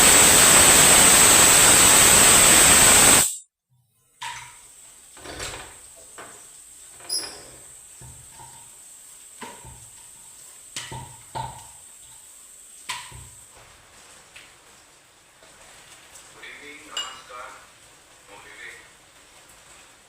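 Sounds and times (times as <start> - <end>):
kitchen utensils knocking and clinking: 4.2 - 4.6, 17.0 - 17.3.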